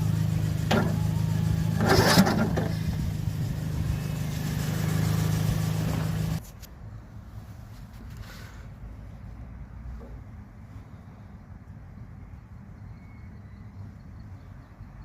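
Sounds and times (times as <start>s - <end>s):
engine running steadily: 0.0s - 6.4s.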